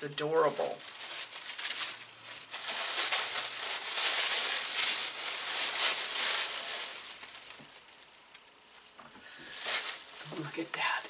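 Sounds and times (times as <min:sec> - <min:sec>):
wrapping paper crinkling: 0:00.0 - 0:11.0.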